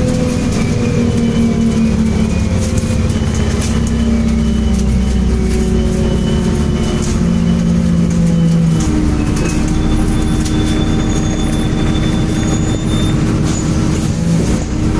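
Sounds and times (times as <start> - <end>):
bus engine drone: 0.0 - 14.9
thin high-pitched squeals: 0.1 - 14.8.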